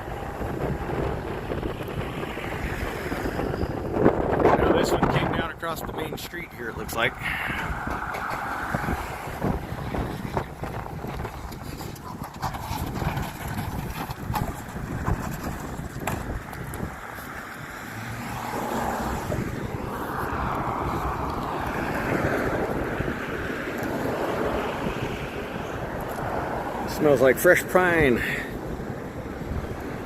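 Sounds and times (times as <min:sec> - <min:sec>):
wind buffeting microphone: 0:00.0 - 0:30.0.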